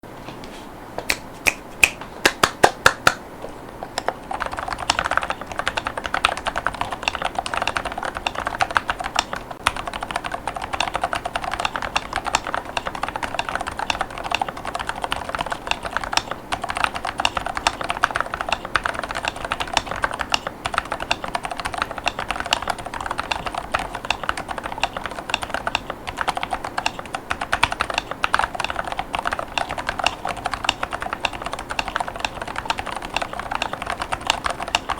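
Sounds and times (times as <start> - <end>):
typing on mechanical keyboard: 4.3 - 34.9.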